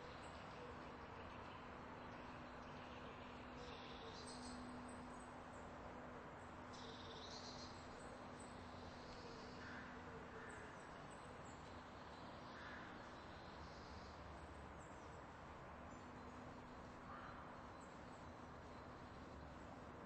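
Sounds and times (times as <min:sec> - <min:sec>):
faint hum and hiss: 0:00.0 - 0:20.0.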